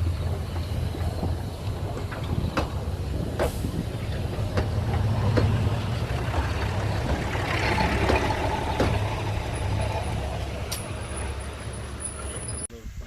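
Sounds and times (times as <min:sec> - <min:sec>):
train rumbling: 0:00.0 - 0:12.9
sharp clicks and knocks: 0:00.6 - 0:09.2.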